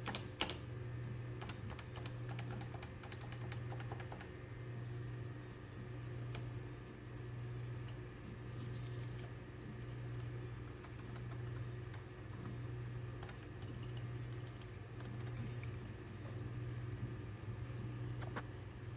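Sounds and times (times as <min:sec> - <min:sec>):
steady low hum: 0:00.0 - 0:18.9
keyboard typing: 0:01.4 - 0:04.3, 0:09.8 - 0:12.1, 0:13.2 - 0:16.1.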